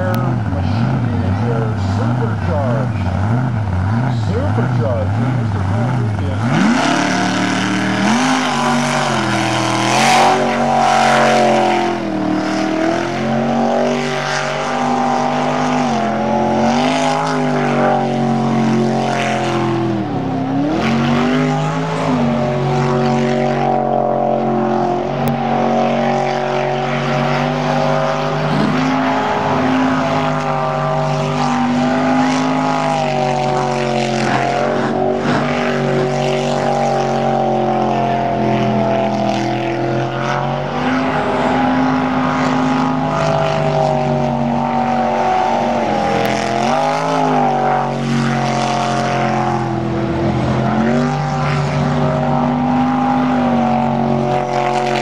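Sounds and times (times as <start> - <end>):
boat engine running hard: 0.0 - 55.0.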